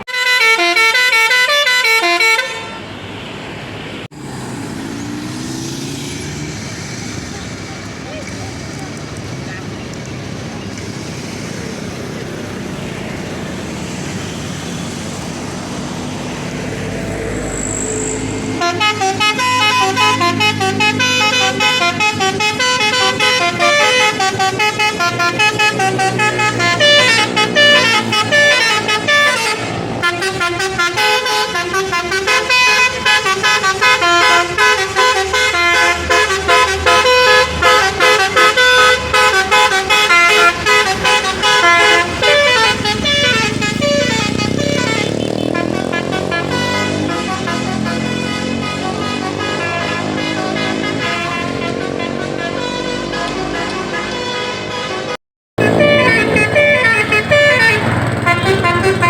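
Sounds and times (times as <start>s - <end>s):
truck musical horn melody: 0.0s - 3.1s, 17.1s - 59.0s.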